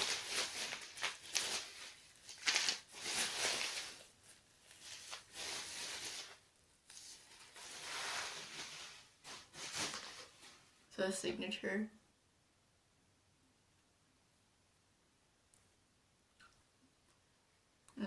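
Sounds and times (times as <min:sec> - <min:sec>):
packaging rustling: 0:00.0 - 0:10.6.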